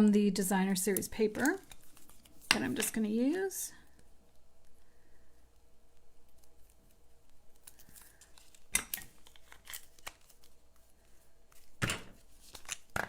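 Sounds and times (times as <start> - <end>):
paper rustling and crinkling: 1.3 - 3.6, 6.3 - 13.0.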